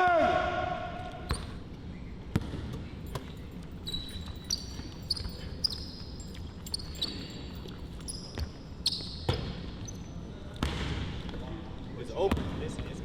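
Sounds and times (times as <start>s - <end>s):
sneakers squeaking on floor: 1.0s - 13.0s
basketball dribbling: 12.3s - 12.6s.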